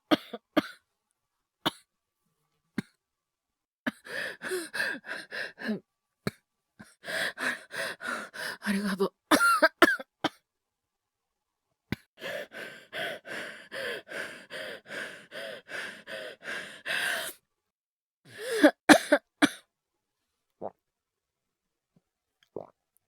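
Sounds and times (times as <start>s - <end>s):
man coughing: 9.3s - 10.0s, 18.6s - 19.6s.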